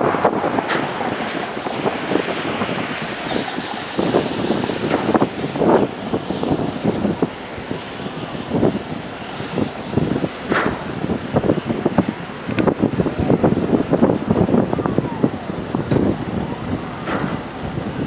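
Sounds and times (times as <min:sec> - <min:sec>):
road and wind noise: 0:00.0 - 0:18.0
knocks and thumps: 0:10.0 - 0:12.0.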